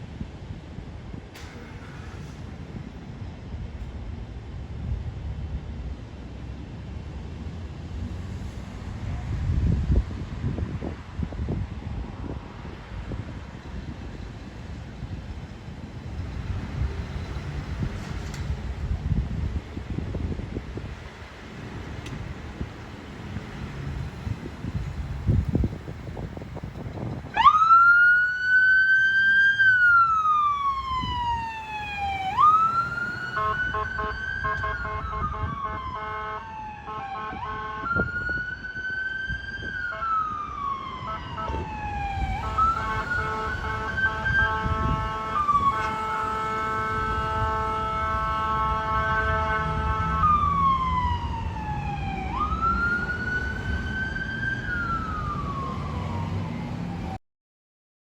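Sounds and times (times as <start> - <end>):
vehicle engine rumble: 0.1 - 36.7
ambulance siren wailing: 27.2 - 57.2
air horn blasts: 33.2 - 38.1, 42.3 - 50.3.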